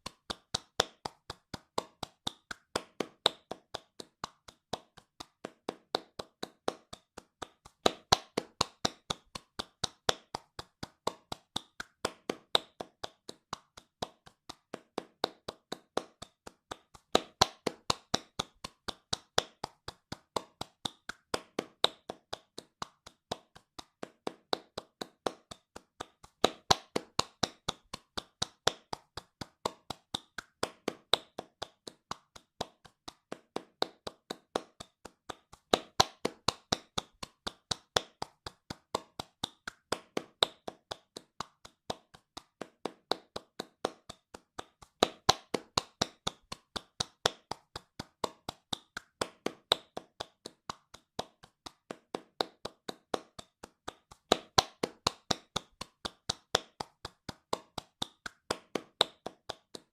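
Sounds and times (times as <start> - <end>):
hands clapping fast: 0.0 - 59.9.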